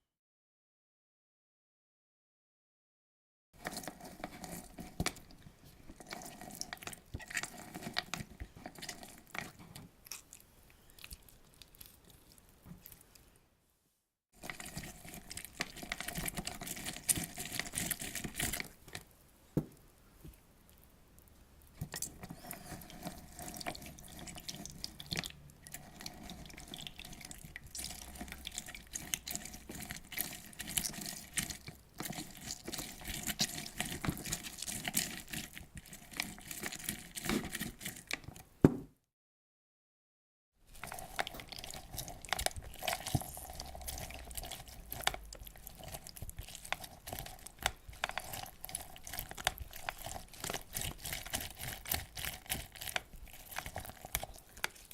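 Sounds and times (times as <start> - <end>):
juice dripping: 40.7 - 54.9.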